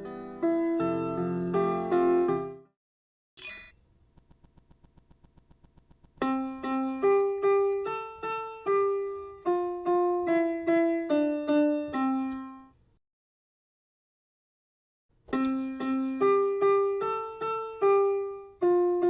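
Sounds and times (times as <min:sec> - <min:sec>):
faint rapid ticking: 0:04.2 - 0:06.6
toy piano melody: 0:06.3 - 0:12.7, 0:15.3 - 0:19.0.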